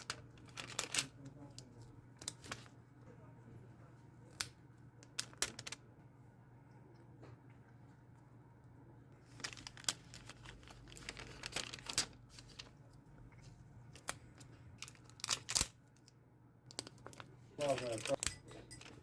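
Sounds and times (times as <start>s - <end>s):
paper crinkling and rustling: 0.0s - 2.8s, 4.4s - 5.8s, 9.2s - 16.1s, 16.7s - 19.0s
faint low hum: 0.0s - 19.0s.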